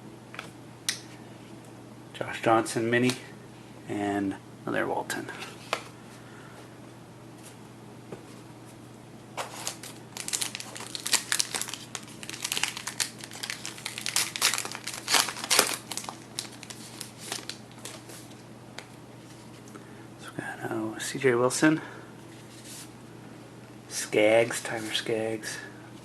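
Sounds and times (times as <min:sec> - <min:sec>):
wrapper tearing and crinkling: 0:09.4 - 0:18.0.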